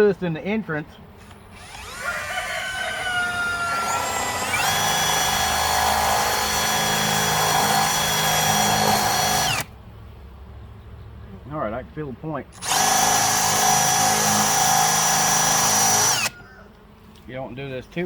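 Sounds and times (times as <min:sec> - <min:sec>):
power drill boring into wood: 0:01.5 - 0:09.7, 0:12.6 - 0:16.4.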